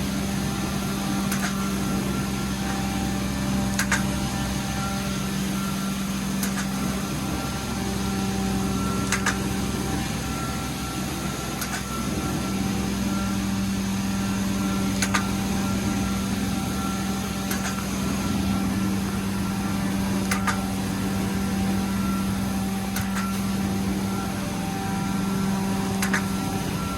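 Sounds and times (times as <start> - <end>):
cleaning machine humming: 0.0 - 26.9
sharp click: 1.3 - 1.6, 3.8 - 4.1, 6.4 - 6.8, 9.1 - 9.4, 11.6 - 11.9, 15.0 - 15.3, 17.5 - 17.9, 20.3 - 20.6, 23.0 - 23.4, 26.0 - 26.3.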